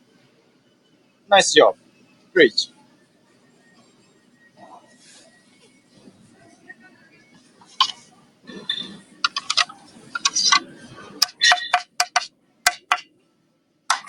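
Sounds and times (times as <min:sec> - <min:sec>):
sharp clicks and light taps: 0:09.2 - 0:10.6.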